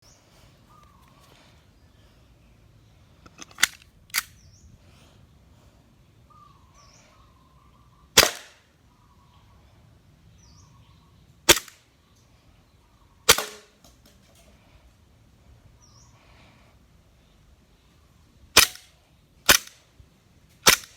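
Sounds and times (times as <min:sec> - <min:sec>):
airsoft pistol shots: 0:08.2 - 0:08.6, 0:11.5 - 0:11.8, 0:13.3 - 0:13.7, 0:18.6 - 0:18.8, 0:19.5 - 0:19.8, 0:20.6 - 0:20.9.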